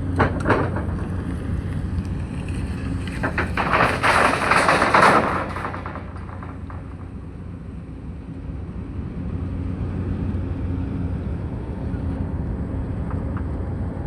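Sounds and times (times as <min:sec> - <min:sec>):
loud crackling noise: 0:00.0 - 0:08.0.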